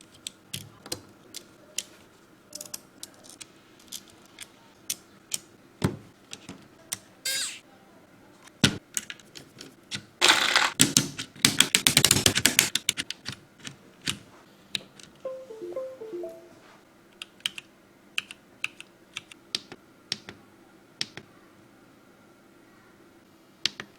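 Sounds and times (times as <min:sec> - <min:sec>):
short musical notes: 0:15.3 - 0:16.6.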